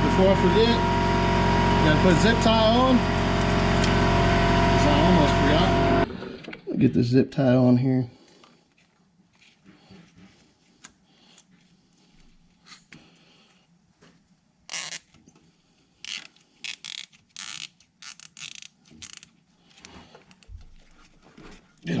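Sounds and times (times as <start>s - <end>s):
zip tie zipping rasps: 14.7s - 15.1s, 16.0s - 19.3s.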